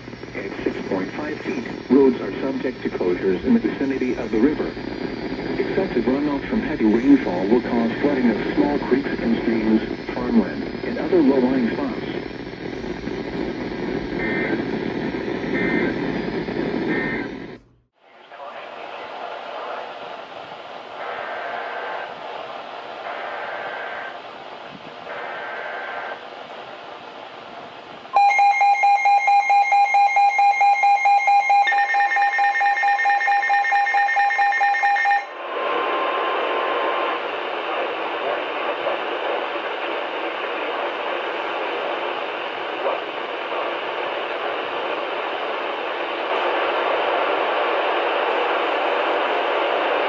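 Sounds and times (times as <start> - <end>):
weather radio alarm beeping: 0.0 - 17.7, 28.2 - 35.4
steady hiss and low hum: 0.0 - 28.2, 35.3 - 50.0.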